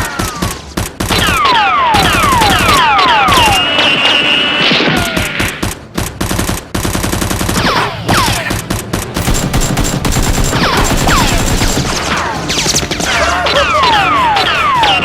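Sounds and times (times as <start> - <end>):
automatic gunfire: 0.8 - 4.1, 5.0 - 13.3.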